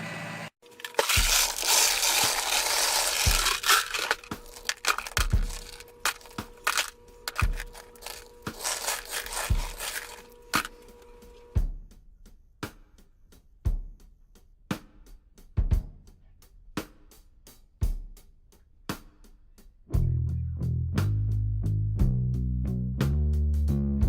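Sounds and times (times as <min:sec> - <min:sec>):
loud crackling noise: 0:00.9 - 0:10.7
intro music: 0:01.1 - 0:11.0.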